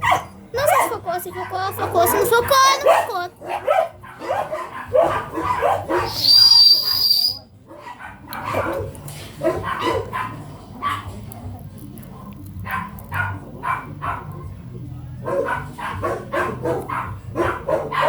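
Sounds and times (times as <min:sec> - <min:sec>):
small dog barking and whining: 0:00.0 - 0:07.4
shrill squeal: 0:06.0 - 0:07.4.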